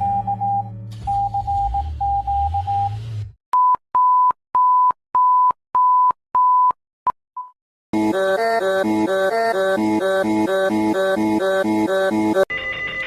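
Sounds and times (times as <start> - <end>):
electronic music with synth melody: 8.0 - 13.0
stuttering steady tone: 8.0 - 13.0.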